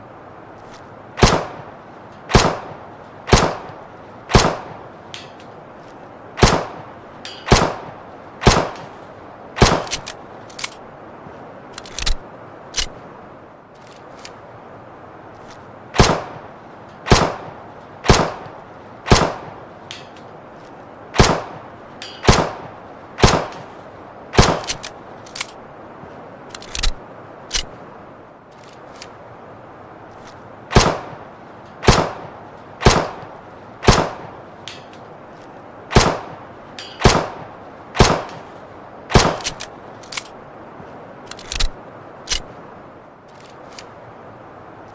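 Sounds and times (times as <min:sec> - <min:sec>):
pistol shots: 0:01.2 - 0:01.6, 0:02.3 - 0:02.7, 0:03.3 - 0:04.8, 0:06.4 - 0:06.8, 0:07.5 - 0:08.9, 0:09.6 - 0:10.0, 0:16.0 - 0:16.4, 0:17.1 - 0:18.4, 0:19.1 - 0:19.6, 0:21.2 - 0:21.6, 0:22.2 - 0:22.6, 0:23.2 - 0:23.7, 0:30.7 - 0:31.2, 0:31.8 - 0:33.2, 0:33.8 - 0:34.3, 0:35.9 - 0:36.4, 0:37.0 - 0:38.5, 0:39.1 - 0:39.6.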